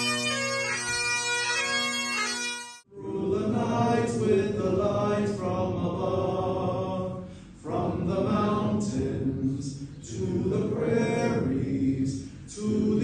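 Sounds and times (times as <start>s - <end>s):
bagpipes playing over drone: 0.0s - 2.9s.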